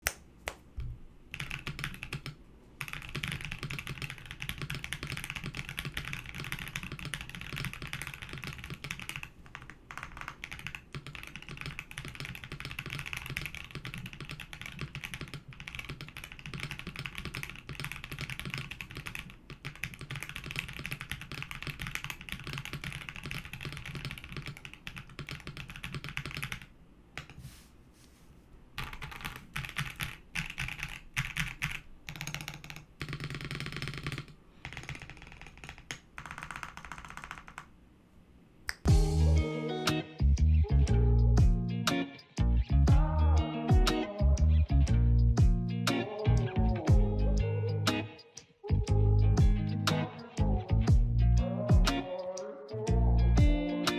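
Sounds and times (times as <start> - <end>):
mechanical keyboard typing: 1.3 - 27.4, 28.8 - 37.8.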